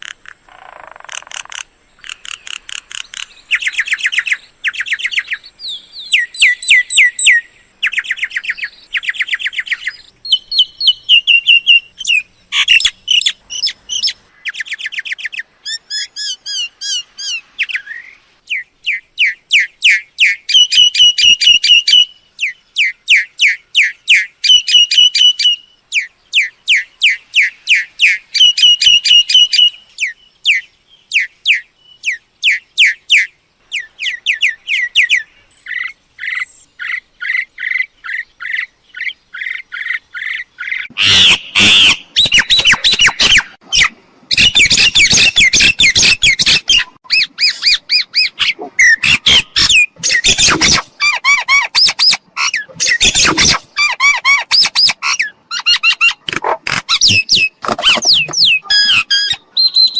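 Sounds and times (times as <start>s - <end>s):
myna chattering and squawking: 40.9s - 59.4s.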